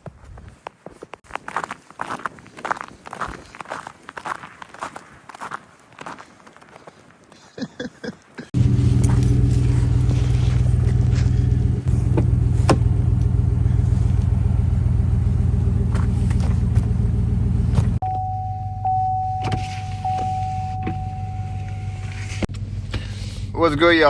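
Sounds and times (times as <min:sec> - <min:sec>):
truck engine rumbling: 0:08.6 - 0:24.0
steady high tone: 0:18.0 - 0:22.4.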